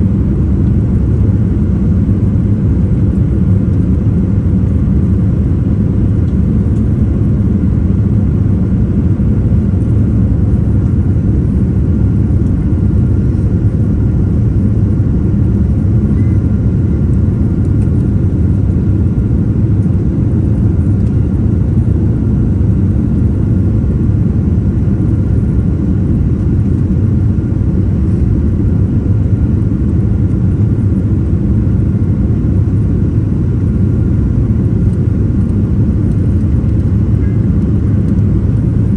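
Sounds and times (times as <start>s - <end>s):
jet engine rumble: 0.0s - 38.9s
faint steady tone: 16.1s - 16.4s.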